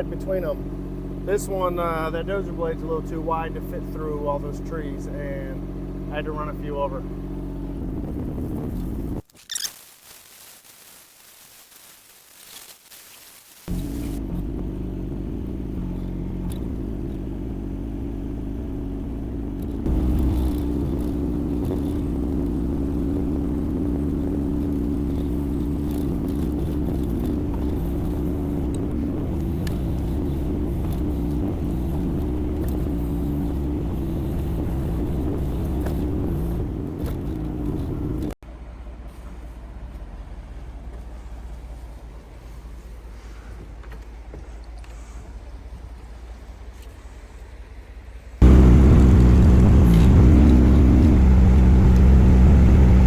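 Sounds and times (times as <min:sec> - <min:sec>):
diesel excavator engine running: 0:13.7 - 0:39.0, 0:48.4 - 0:53.0.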